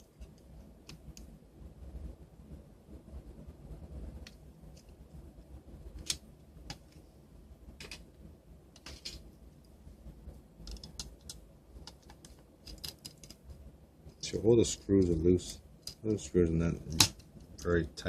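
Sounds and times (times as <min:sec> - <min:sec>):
screwdriver clicking on small parts: 0:10.6 - 0:13.4.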